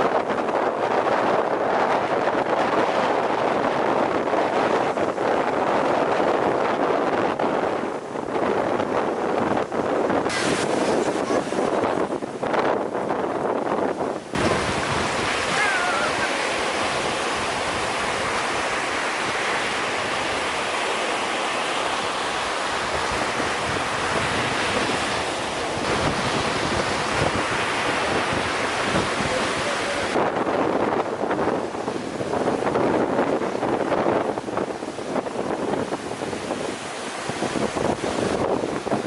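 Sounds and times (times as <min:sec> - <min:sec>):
wind buffeting microphone: 0:00.0 - 0:39.0
surf breaking: 0:10.2 - 0:39.0.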